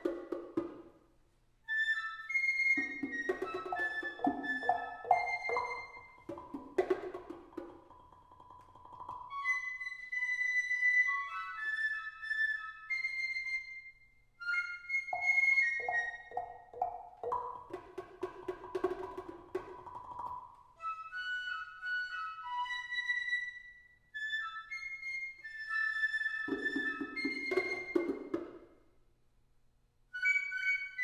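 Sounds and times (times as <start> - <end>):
mallets on tuned percussion: 2.8 - 9.8, 15.1 - 20.5.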